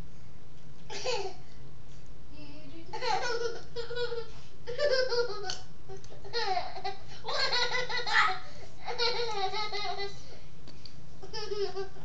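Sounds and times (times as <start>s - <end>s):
baby laughing: 3.0s - 10.2s, 11.2s - 12.0s.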